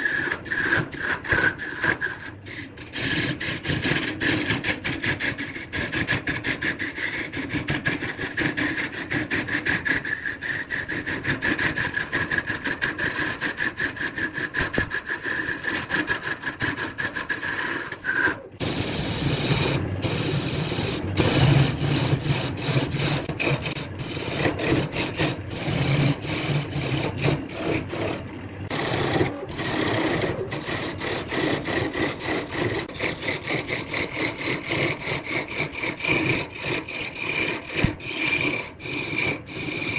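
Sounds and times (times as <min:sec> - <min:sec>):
wood lathe tool scraping: 0:00.0 - 0:39.9.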